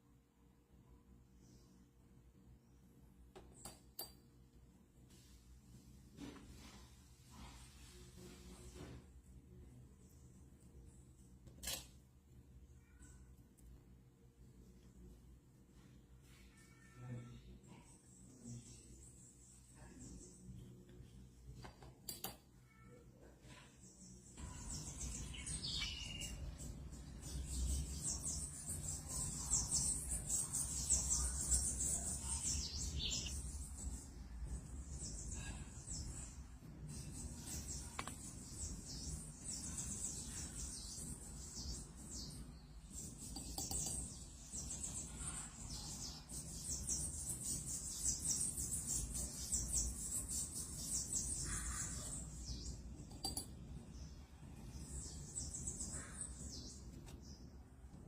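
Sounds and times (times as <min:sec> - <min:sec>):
bird chirps: 0:22.2 - 0:53.6.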